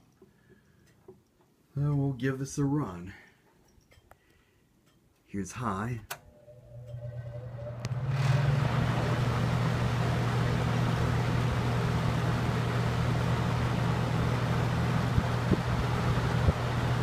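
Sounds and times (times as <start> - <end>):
fan motor hum: 5.6 - 17.0
rush of air from fan: 8.0 - 17.0.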